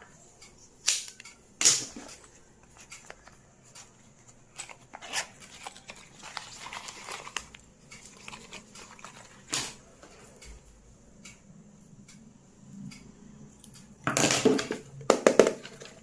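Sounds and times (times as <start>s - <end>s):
small objects clicking and crinkling: 1.0s - 9.8s.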